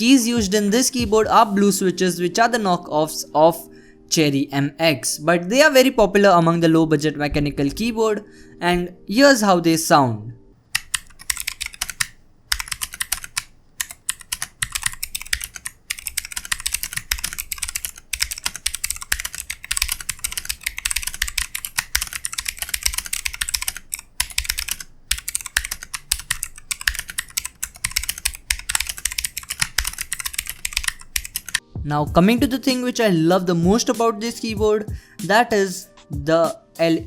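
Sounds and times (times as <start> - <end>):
mechanical keyboard key clicks: 10.8 - 31.6.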